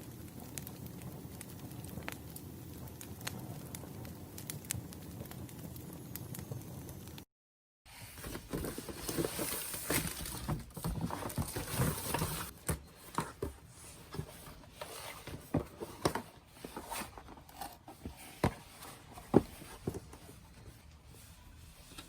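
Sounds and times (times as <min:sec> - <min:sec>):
firewood crackling and popping: 0:00.0 - 0:07.2.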